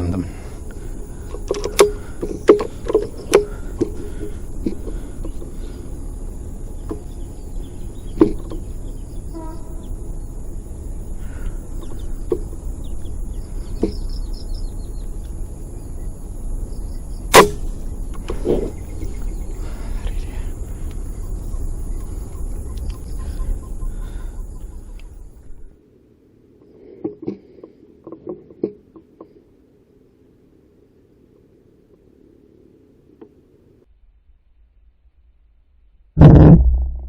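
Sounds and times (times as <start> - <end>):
air rifle shot crack: 17.3 - 17.8.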